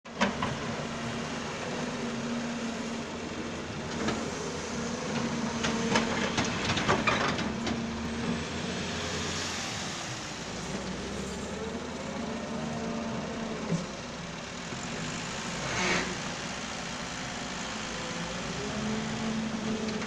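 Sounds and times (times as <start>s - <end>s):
excavator diesel engine running: 0.1s - 20.0s.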